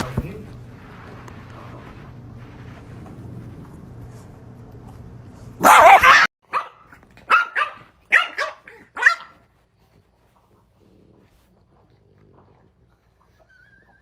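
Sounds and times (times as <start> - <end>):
dog barking: 5.6 - 9.4.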